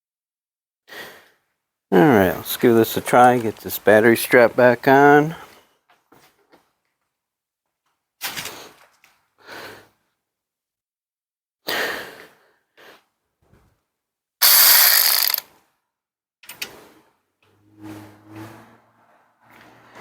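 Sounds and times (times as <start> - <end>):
cordless ratchet wrench whirring: 14.4 - 15.4.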